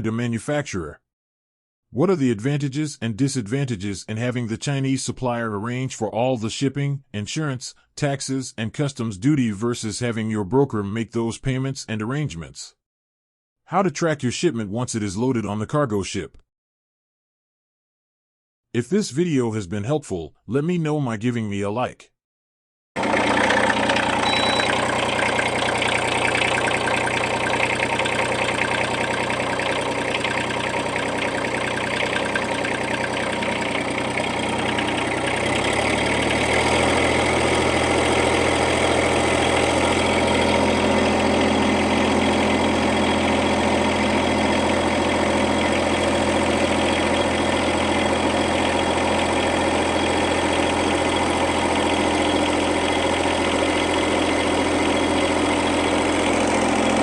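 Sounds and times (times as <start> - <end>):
mini excavator engine running: 23.0 - 57.0.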